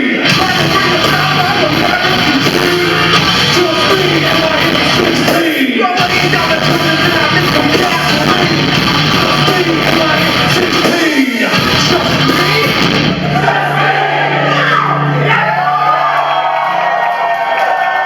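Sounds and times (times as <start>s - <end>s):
person yelling and singing: 0.0s - 12.8s
guitar: 0.0s - 16.7s
live band music: 0.1s - 15.3s.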